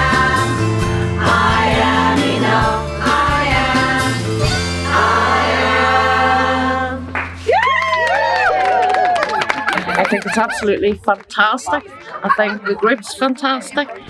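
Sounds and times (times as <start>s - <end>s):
women's choir singing: 0.0s - 7.4s.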